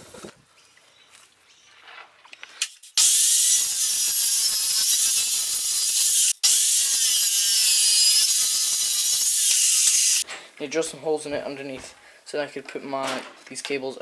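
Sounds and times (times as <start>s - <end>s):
power drill boring into wood: 3.0s - 10.2s.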